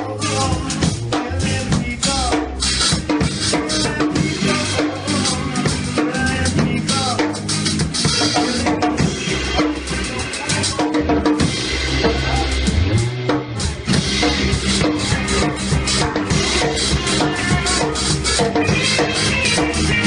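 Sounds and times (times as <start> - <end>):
band playing music: 0.0 - 20.0
bass drum and snare beating: 0.0 - 20.0.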